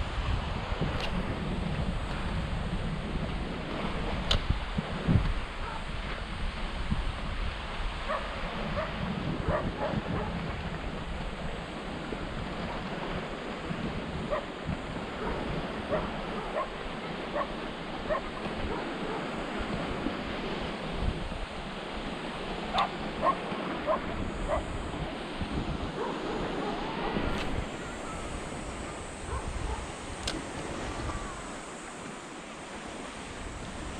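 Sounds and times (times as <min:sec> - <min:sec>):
surf washing: 0:00.0 - 0:33.9
wind buffeting microphone: 0:00.0 - 0:33.9
distant dog barking: 0:05.6 - 0:05.9, 0:08.1 - 0:10.5, 0:14.3 - 0:19.6, 0:22.7 - 0:24.8, 0:25.8 - 0:30.2.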